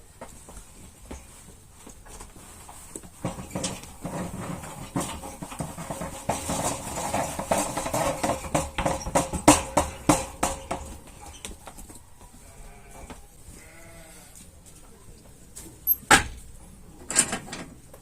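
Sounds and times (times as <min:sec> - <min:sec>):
farm animals: 0:02.4 - 0:16.0
irregular knocks and clatters: 0:02.9 - 0:12.0.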